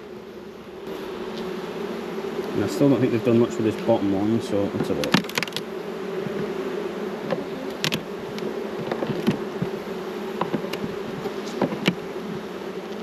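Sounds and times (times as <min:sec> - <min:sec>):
honey bees buzzing: 0:00.0 - 0:13.0
sharp clicks and knocks: 0:04.8 - 0:05.6, 0:07.2 - 0:09.8, 0:10.4 - 0:12.0.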